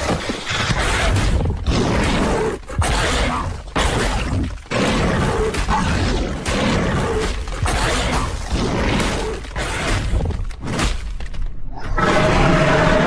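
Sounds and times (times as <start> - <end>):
creature roars and growls: 11.7 - 13.0.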